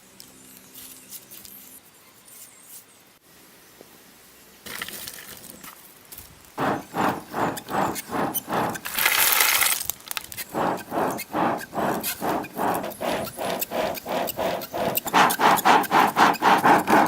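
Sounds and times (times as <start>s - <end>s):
stone scraping against stone: 6.6s - 9.2s, 10.5s - 17.0s.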